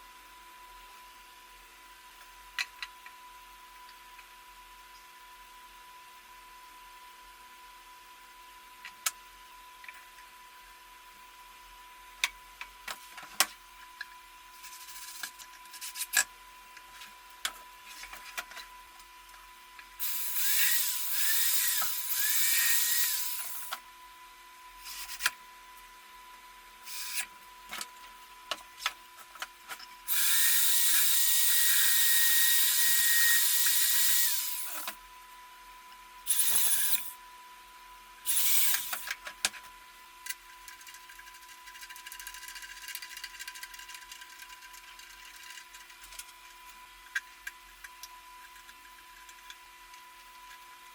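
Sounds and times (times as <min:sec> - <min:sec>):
electric drill whining: 0:20.0 - 0:23.8, 0:26.9 - 0:27.2, 0:30.1 - 0:35.0, 0:36.3 - 0:37.2, 0:38.3 - 0:39.2.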